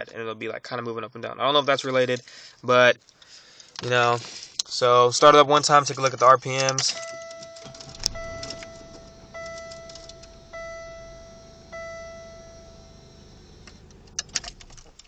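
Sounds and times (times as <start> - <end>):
car engine rumbling: 5.2 - 15.0
dashboard warning chime: 6.8 - 14.5.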